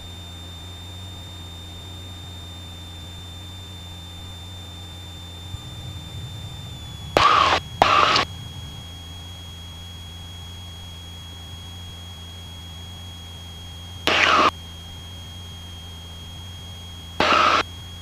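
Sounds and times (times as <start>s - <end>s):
aircraft engine and propeller drone: 0.0s - 18.0s
short loud bursts of noise: 7.2s - 8.2s, 14.1s - 14.5s, 17.2s - 17.6s
steady high tone: 7.2s - 8.2s, 14.1s - 14.5s, 17.2s - 17.6s.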